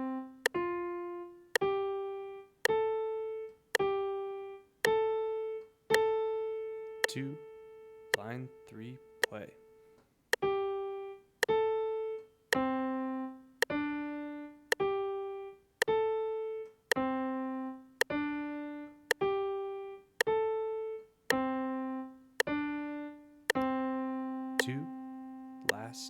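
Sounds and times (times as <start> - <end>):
metronome click: 5.9 - 6.2, 7.0 - 7.4, 23.5 - 23.8, 24.6 - 24.9
piano single notes: 21.3 - 26.0.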